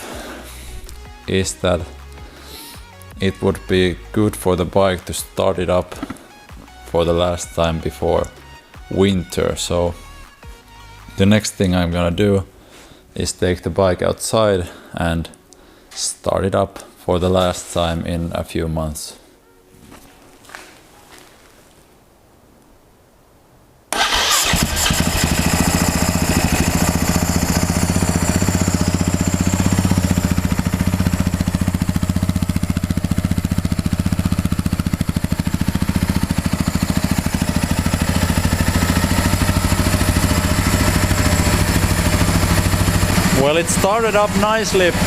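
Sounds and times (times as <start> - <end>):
motorcycle engine starting and idling: 23.9 - 45.0.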